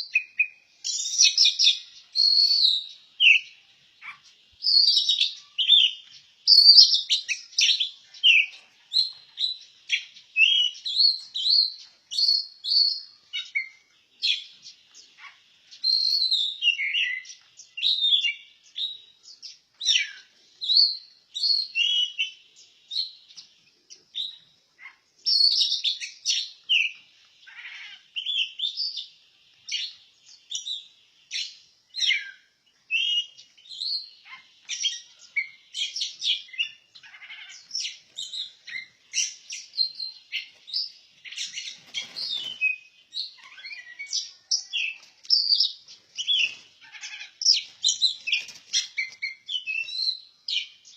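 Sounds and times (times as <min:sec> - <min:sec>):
bird singing whistled phrases: 0:00.0 - 0:14.5, 0:15.8 - 0:19.0, 0:19.9 - 0:22.4, 0:31.4 - 0:36.8, 0:37.8 - 0:46.6, 0:47.5 - 0:50.7.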